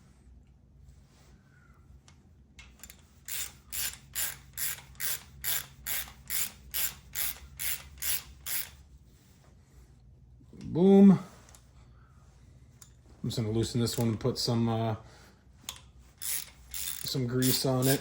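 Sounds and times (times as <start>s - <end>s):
ratchet wrench clicking: 2.6s - 8.8s, 15.7s - 18.0s.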